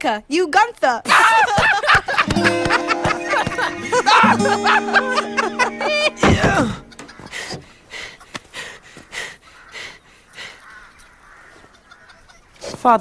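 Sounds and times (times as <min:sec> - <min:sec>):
gliding laughter-like voices: 0:01.1 - 0:07.4, 0:11.6 - 0:12.6
cartoon music with held notes: 0:02.2 - 0:07.2.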